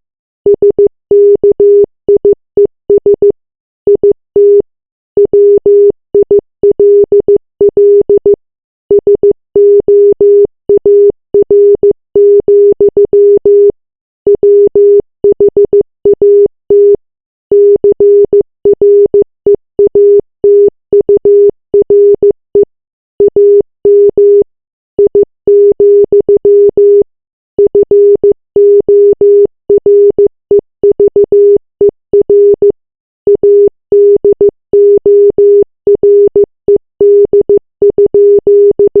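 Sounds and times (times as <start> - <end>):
morse code beeps: 0.5 - 4.6, 5.2 - 19.2, 19.8 - 39.0.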